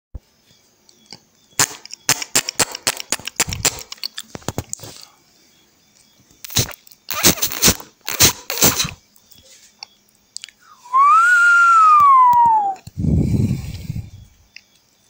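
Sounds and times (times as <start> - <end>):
sharp cracks and crunches: 1.6 - 5.1, 6.4 - 9.3.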